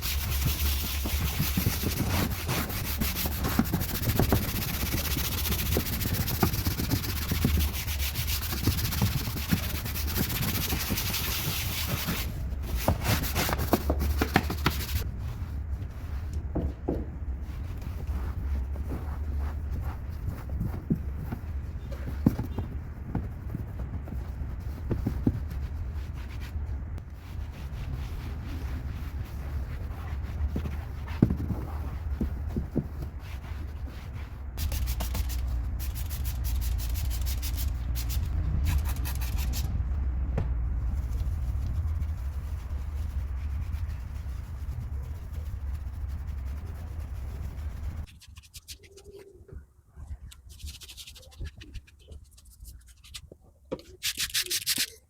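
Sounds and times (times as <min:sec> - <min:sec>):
hand scrubbing surfaces: 0:00.0 - 0:16.3, 0:17.2 - 0:21.7, 0:25.6 - 0:39.8, 0:40.8 - 0:49.2
steady low rumble: 0:00.0 - 0:48.1.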